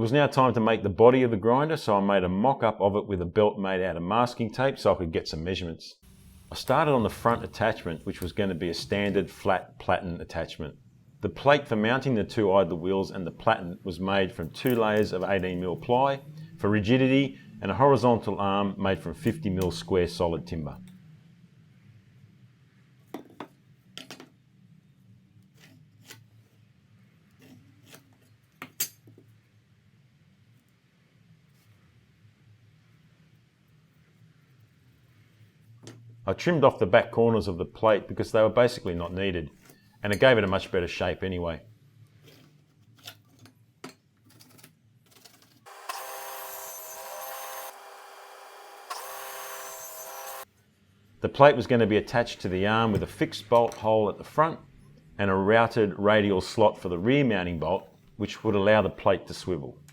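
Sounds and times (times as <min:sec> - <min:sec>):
power tool cutting plywood: 0:06.0 - 0:09.2, 0:45.7 - 0:50.5.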